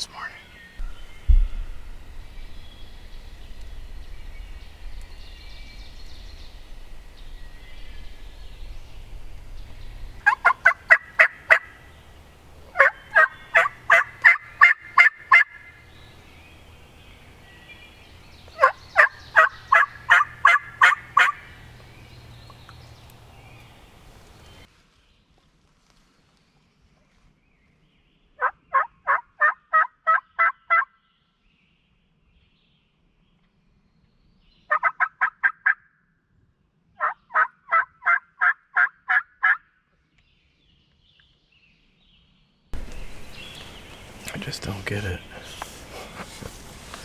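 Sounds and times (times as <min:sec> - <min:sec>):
turkey yelps: 0:10.2 - 0:11.8, 0:12.7 - 0:15.7, 0:18.6 - 0:21.6, 0:28.4 - 0:30.9, 0:34.7 - 0:35.8, 0:37.0 - 0:39.6.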